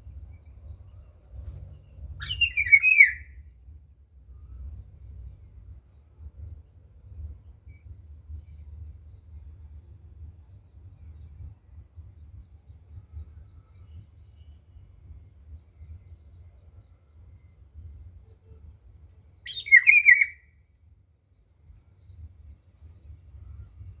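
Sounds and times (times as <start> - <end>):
bird chirping call: 2.2 - 3.4, 19.5 - 20.5.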